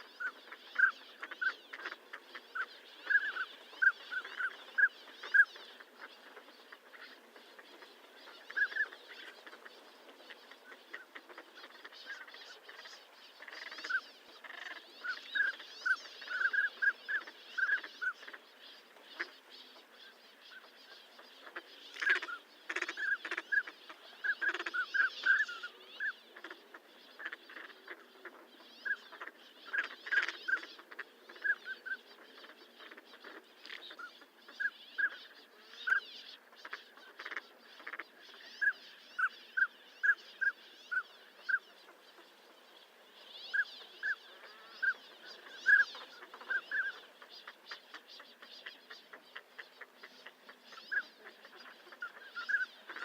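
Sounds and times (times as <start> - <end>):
ducks whistling calls: 0.0 - 53.0
raspy duck calls: 20.6 - 42.2.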